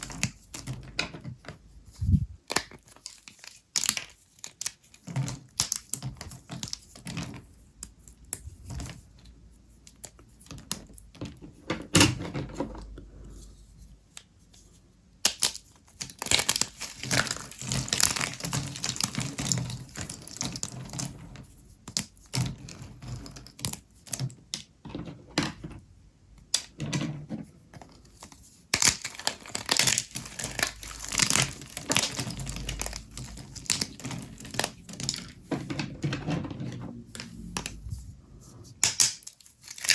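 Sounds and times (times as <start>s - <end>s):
brittle soap crackling and snapping: 0.0s - 9.0s, 15.2s - 24.7s, 27.8s - 35.6s, 38.8s - 39.9s.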